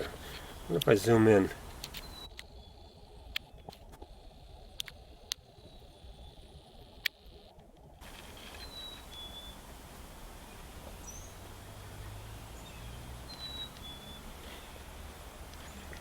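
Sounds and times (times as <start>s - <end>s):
outdoor background noise: 0.0s - 16.0s
higher bird chirp: 1.6s - 3.0s, 8.4s - 9.6s, 10.4s - 16.0s
bird whistling call: 8.6s - 9.6s, 12.2s - 14.8s.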